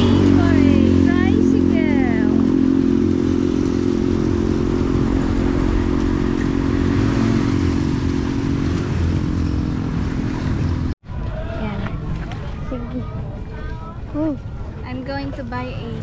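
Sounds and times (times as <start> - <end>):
motorcycle engine running: 0.0 - 11.0
road and wind noise: 0.0 - 16.0.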